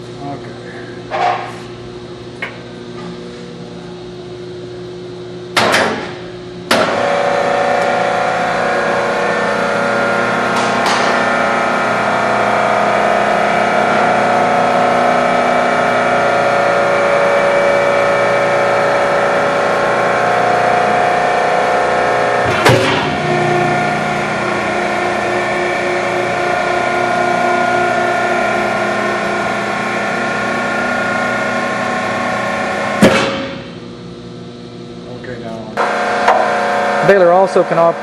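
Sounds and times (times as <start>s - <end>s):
baler motor and pump humming: 0.0s - 38.0s
loud knocks: 33.0s - 33.6s.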